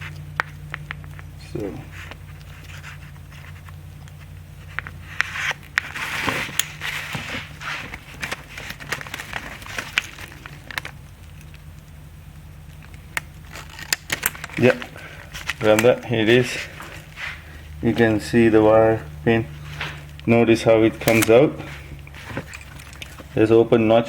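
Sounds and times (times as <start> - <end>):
low steady hum: 0.0 - 24.0
wires rustling: 0.0 - 24.0
screwdriver clicking and scraping: 12.9 - 14.8.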